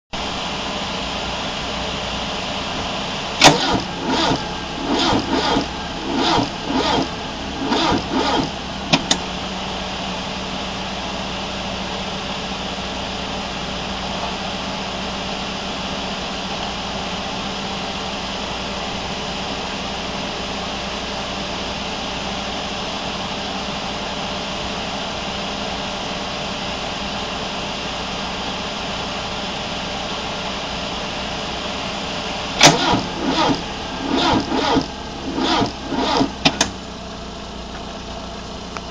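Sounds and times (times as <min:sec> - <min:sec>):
engine cranking on starter: 0:03.3 - 0:09.4, 0:32.5 - 0:38.8.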